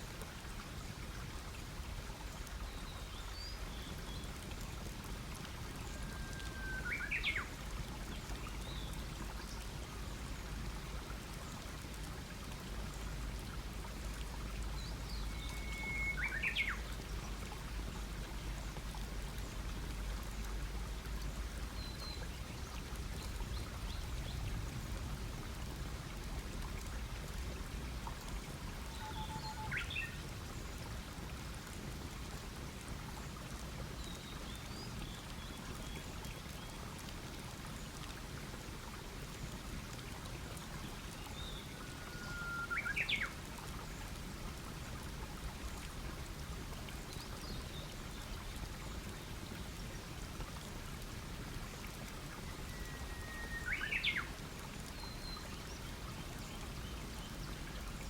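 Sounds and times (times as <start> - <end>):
songbird singing: 6.0 - 7.5, 14.8 - 16.9, 28.9 - 30.2, 41.3 - 43.3, 52.5 - 54.3.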